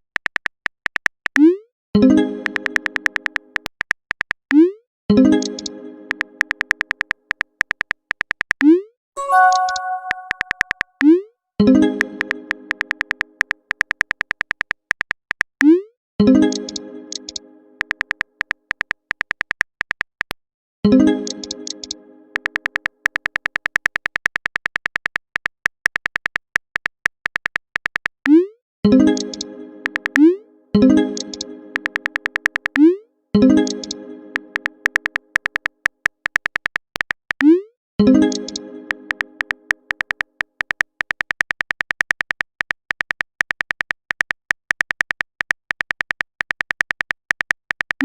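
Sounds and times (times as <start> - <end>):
phone keyboard typing clicks: 0.1 - 1.5, 2.4 - 4.5, 5.3 - 10.9, 11.9 - 15.5, 16.5 - 20.4, 21.2 - 28.2, 29.1 - 30.3, 31.2 - 32.9, 33.6 - 37.5, 38.2 - 48.0
synthesized chime: 9.2 - 10.7
beeping key clicks: 9.2 - 10.8.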